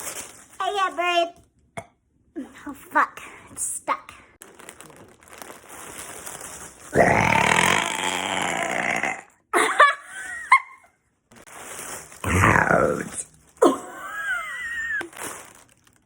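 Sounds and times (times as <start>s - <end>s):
long burp: 6.9s - 9.4s.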